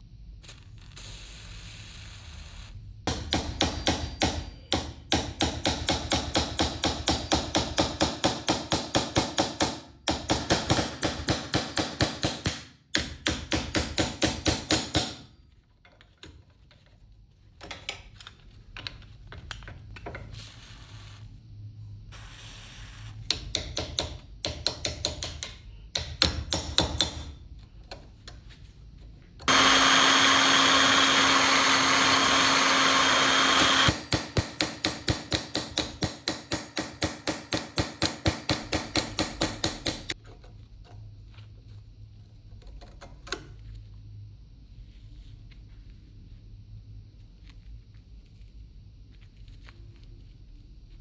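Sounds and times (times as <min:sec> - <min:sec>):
hammer tapping metal: 0:03.1 - 0:15.2, 0:23.3 - 0:27.4, 0:29.5 - 0:40.2
power tool running: 0:29.4 - 0:35.3.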